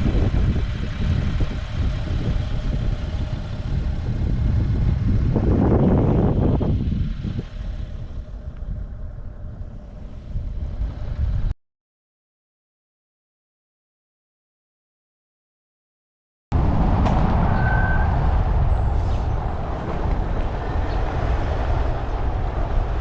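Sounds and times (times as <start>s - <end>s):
car road rumble: 0.0s - 11.6s, 16.5s - 23.0s
wind noise: 0.0s - 11.6s, 16.5s - 23.0s.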